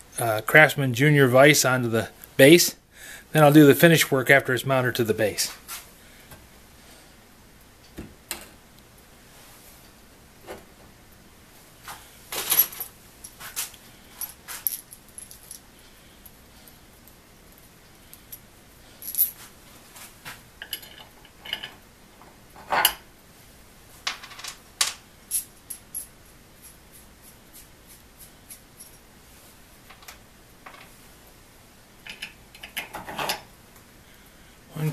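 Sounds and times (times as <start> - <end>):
metal tools clinking and clattering: 20.6 - 21.8, 32.1 - 33.4.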